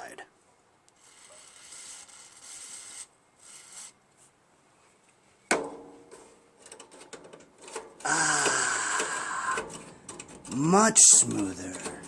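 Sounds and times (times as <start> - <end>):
sharp metal clunk: 5.5 - 6.2.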